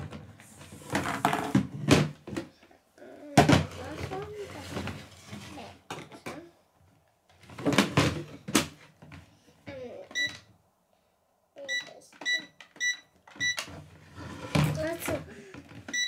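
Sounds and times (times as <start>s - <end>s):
short electronic beeps: 11.7s - 13.6s.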